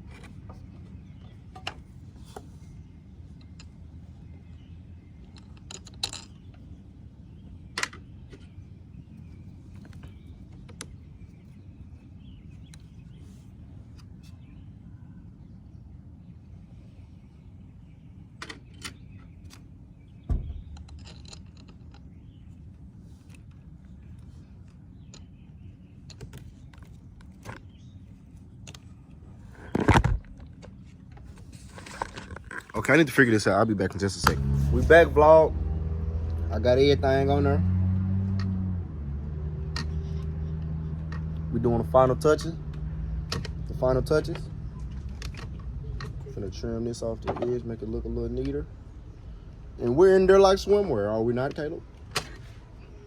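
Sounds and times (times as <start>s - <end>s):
low outdoor rumble: 0.0s - 53.0s
tools clicking and knocking: 5.2s - 6.6s, 20.3s - 22.1s.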